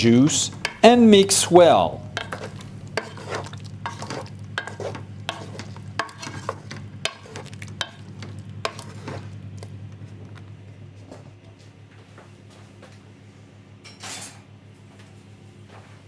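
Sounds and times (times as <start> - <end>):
spoon scraping and knocking pot: 0.0 - 9.3.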